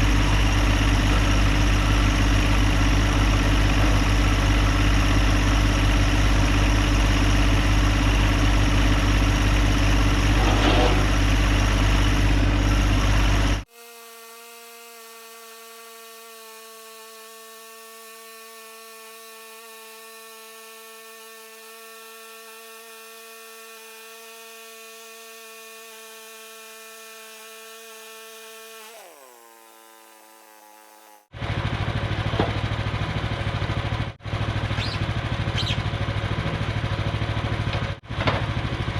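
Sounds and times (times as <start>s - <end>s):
gas engine running: 0.0s - 13.7s, 28.8s - 38.9s.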